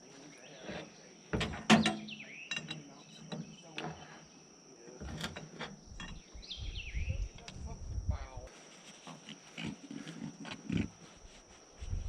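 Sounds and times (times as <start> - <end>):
high insect drone: 0.0 - 12.0
metal clanks and clicks: 1.4 - 4.0, 5.0 - 6.2.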